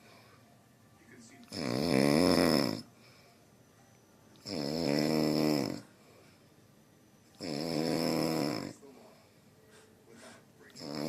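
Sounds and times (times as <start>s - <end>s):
rhinoceros snoring: 1.5s - 2.9s, 4.4s - 5.9s, 7.4s - 8.8s, 10.8s - 11.0s.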